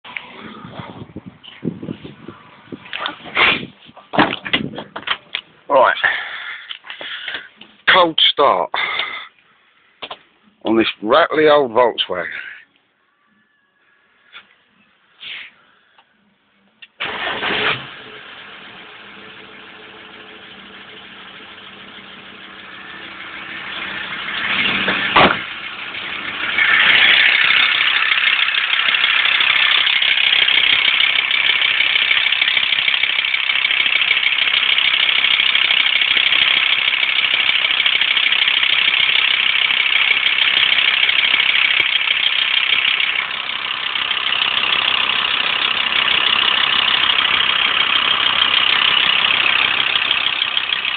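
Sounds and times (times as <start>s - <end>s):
van engine starting and rattling: 17.0s - 50.9s.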